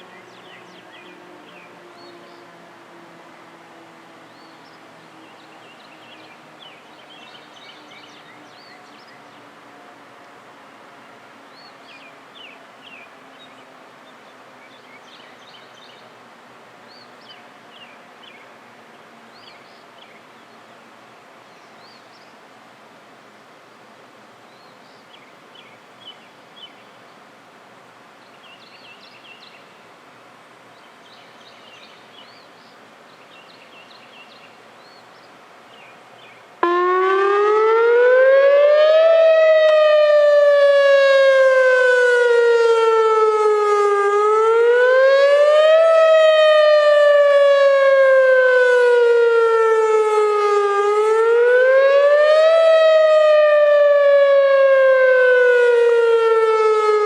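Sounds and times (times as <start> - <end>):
outdoor background hiss: 0.0 - 57.0
distant siren winding down: 36.6 - 57.0.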